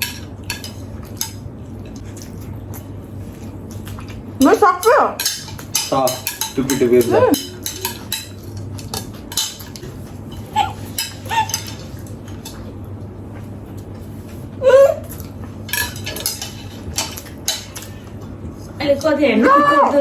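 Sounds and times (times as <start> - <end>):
utensils clinking on plates: 0.0 - 2.4, 3.8 - 12.7, 15.1 - 18.2.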